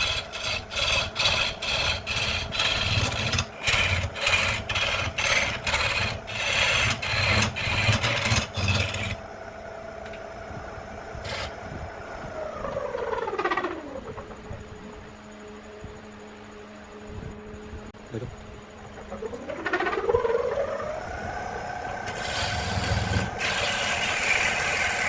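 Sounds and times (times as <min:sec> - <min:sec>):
tool scraping spinning wood: 0:00.0 - 0:09.3, 0:11.1 - 0:14.6, 0:18.8 - 0:25.0
lathe motor hum: 0:00.0 - 0:16.2, 0:18.4 - 0:25.0.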